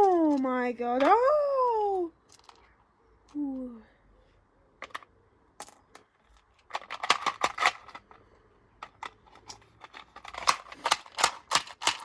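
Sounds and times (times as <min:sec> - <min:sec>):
plastic parts clattering: 0:02.3 - 0:02.7, 0:04.8 - 0:12.0.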